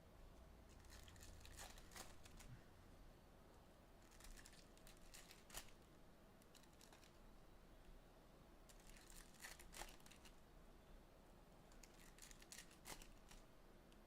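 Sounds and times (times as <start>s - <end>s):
foil wrappers crinkling and tearing: 0.7s - 2.5s, 4.0s - 5.8s, 6.5s - 7.2s, 8.7s - 10.4s, 11.8s - 13.4s.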